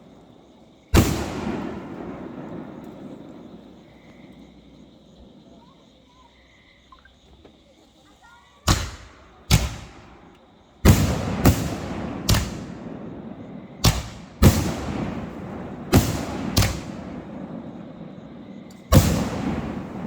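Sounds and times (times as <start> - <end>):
fireworks bangs with rumbling echo: 0.0 - 6.0, 8.6 - 20.0.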